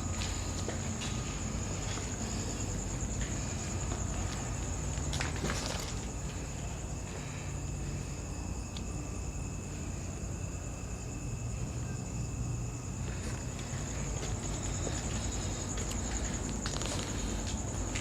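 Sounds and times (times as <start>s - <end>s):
night insects chirring: 0.0s - 18.0s.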